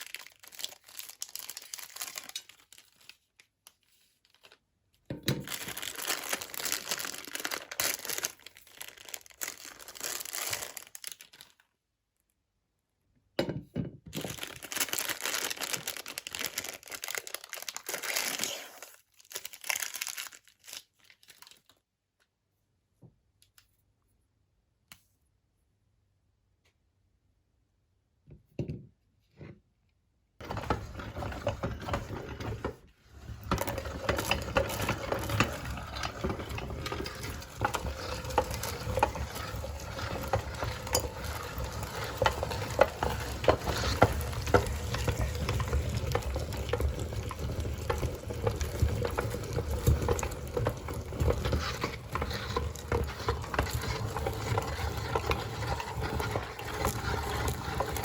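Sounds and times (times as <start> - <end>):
meat grinder crunching ice cream: 0.0 - 3.0, 5.3 - 11.5, 14.2 - 20.9, 30.4 - 58.0.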